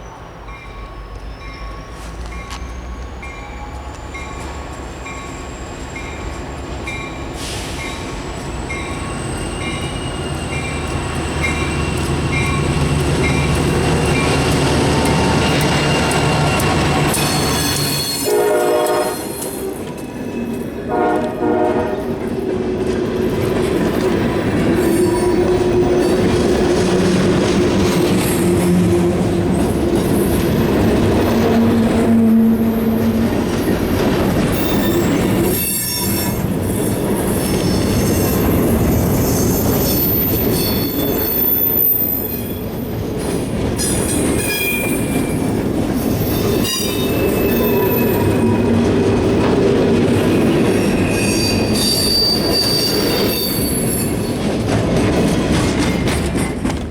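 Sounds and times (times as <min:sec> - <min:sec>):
train wheels rumbling on rails: 0:00.0 - 0:56.9
wheel flanges squealing: 0:08.6 - 0:18.3, 0:24.1 - 0:42.8, 0:50.1 - 0:54.5.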